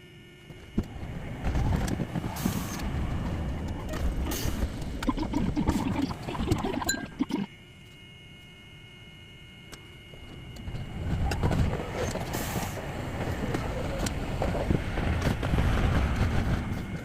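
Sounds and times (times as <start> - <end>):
streetcar rumble and wheel noise: 0.7 - 5.6, 10.2 - 17.0.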